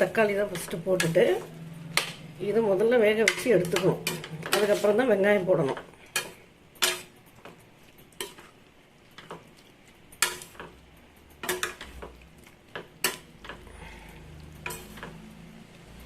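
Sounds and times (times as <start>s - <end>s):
metal ladle clinking on a pan: 5.6s - 8.5s, 10.1s - 13.7s, 14.5s - 15.3s.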